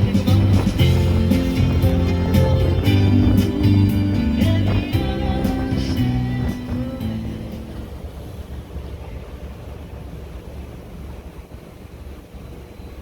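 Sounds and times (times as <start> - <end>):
music track: 0.0 - 7.8
low rumble: 0.0 - 10.4
wind buffeting microphone: 0.0 - 13.0.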